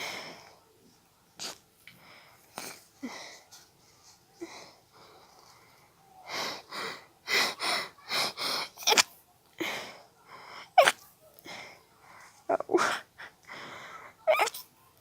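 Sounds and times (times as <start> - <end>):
person stifling a sneeze: 8.7 - 9.2, 10.8 - 11.0, 14.3 - 14.6.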